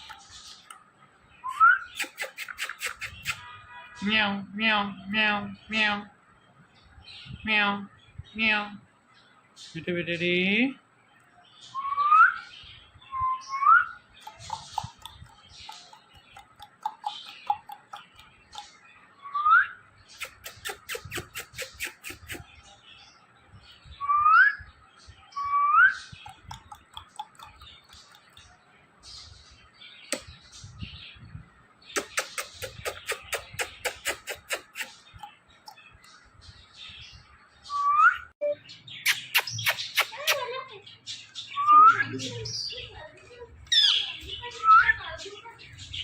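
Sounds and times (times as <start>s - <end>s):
parrot rapid clicks: 2.0s - 3.4s, 14.3s - 18.7s, 26.3s - 28.3s, 32.0s - 34.9s.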